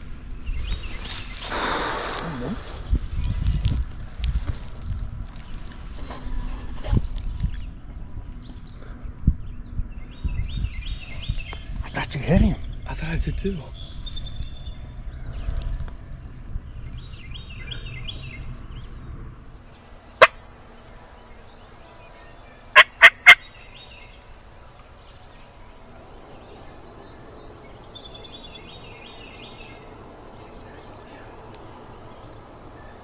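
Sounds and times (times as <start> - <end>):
turkey gobbling: 20.2 - 20.4, 22.7 - 23.4.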